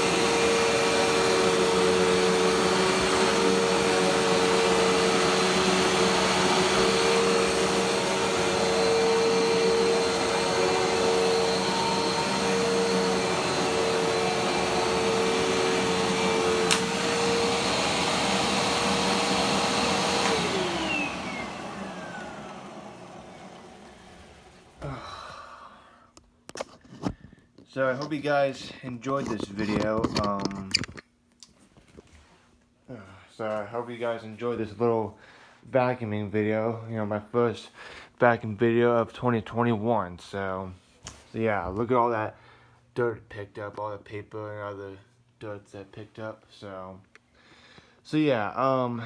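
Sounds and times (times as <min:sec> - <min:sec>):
vacuum cleaner running: 0:00.0 - 0:25.6.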